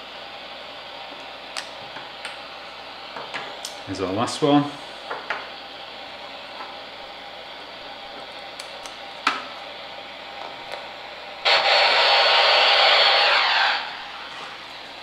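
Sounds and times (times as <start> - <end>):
loud buzzing hiss: 11.4 - 14.4.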